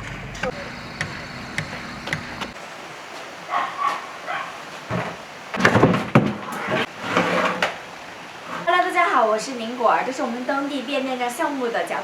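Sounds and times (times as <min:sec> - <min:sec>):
dog barking: 0:03.5 - 0:04.6.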